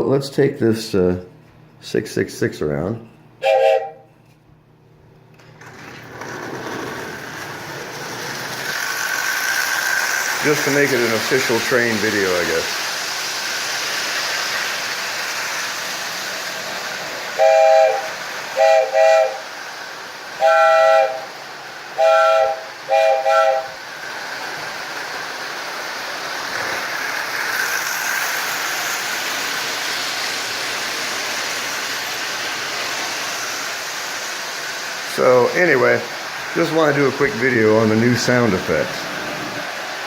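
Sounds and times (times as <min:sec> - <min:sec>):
toy train whistle: 0:03.4 - 0:04.1, 0:17.3 - 0:19.6, 0:20.4 - 0:23.9
toy train running on track: 0:05.4 - 0:40.0.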